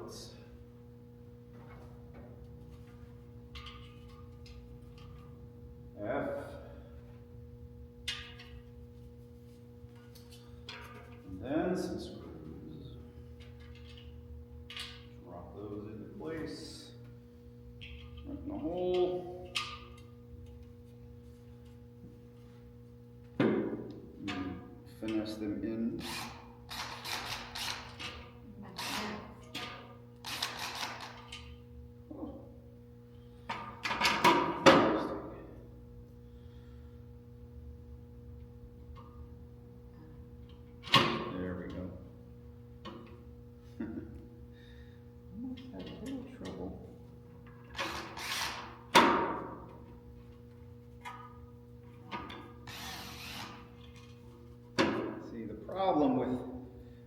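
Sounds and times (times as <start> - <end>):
screwdriver driving screws: 26.0 - 28.0, 30.2 - 31.2, 52.7 - 53.6.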